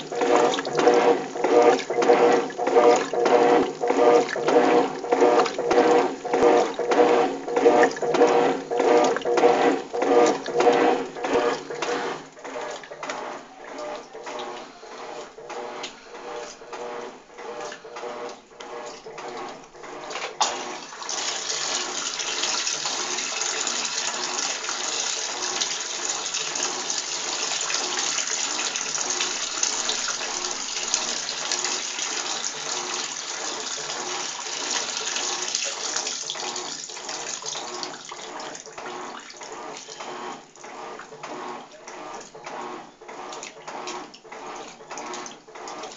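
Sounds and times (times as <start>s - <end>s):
motor hum: 0.0s - 20.2s
washing machine agitator churning: 0.0s - 45.9s.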